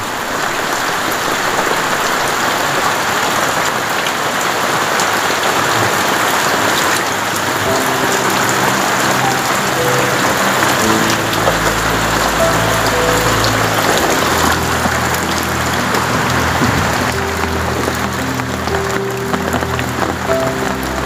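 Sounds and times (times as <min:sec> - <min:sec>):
heavy rain pouring: 0:00.0 - 0:21.0
raindrop ticks: 0:04.8 - 0:21.0.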